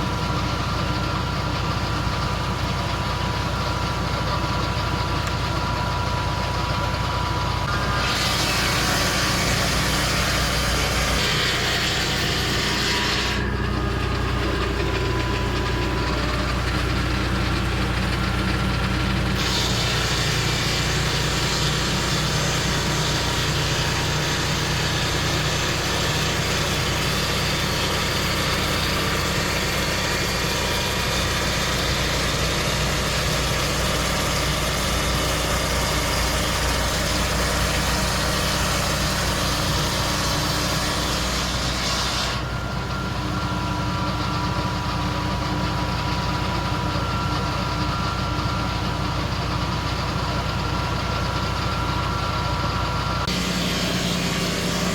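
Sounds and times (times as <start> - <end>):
sawmill engine running: 0.0 - 54.9.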